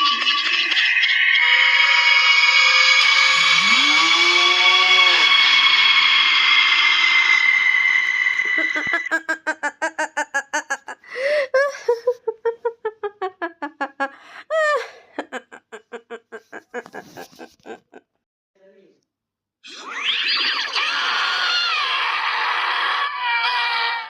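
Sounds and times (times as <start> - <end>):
stuttering monster cackle: 0.1 - 18.0, 19.7 - 24.0
shrill hissing monster screech: 1.4 - 9.0, 19.7 - 24.0.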